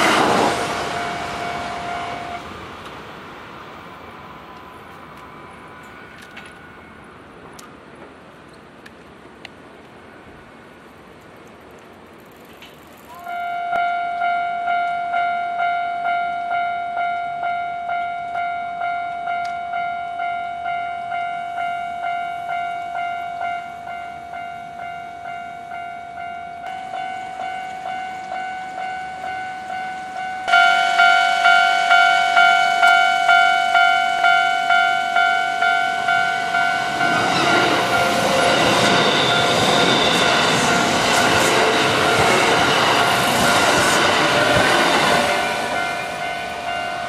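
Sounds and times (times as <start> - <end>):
railroad crossing bell clanging: 0.0 - 2.4, 13.1 - 47.0
second crossing bell: 13.1 - 41.0, 41.6 - 47.0.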